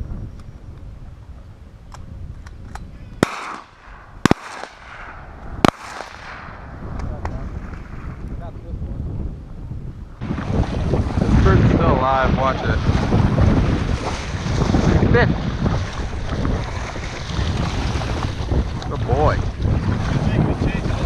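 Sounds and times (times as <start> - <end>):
wind rumbling on microphone: 0.0 - 21.0
distant gunshots: 3.2 - 7.1
shotgun blasts: 3.2 - 7.4.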